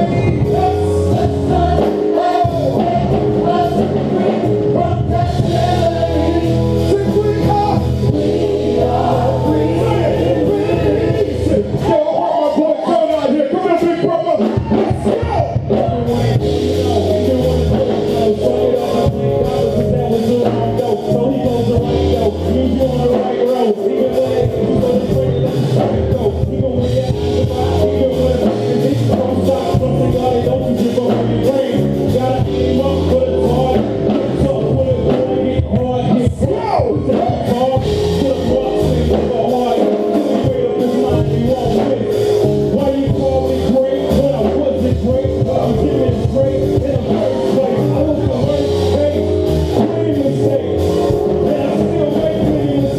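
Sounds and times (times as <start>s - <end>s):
live worship band music: 0.0s - 52.9s
person singing: 0.0s - 52.9s.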